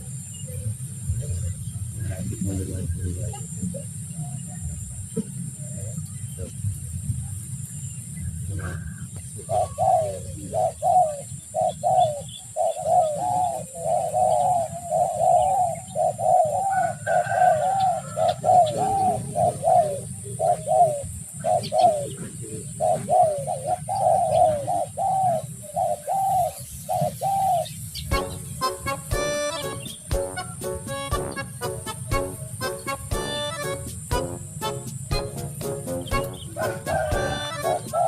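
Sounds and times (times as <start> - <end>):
dove cooing: 8.6 - 38.0.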